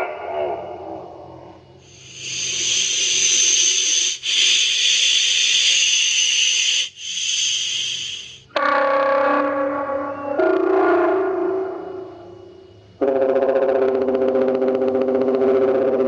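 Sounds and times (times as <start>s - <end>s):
loud breathy hiss: 1.8s - 8.5s
electronic tone: 11.8s - 16.0s.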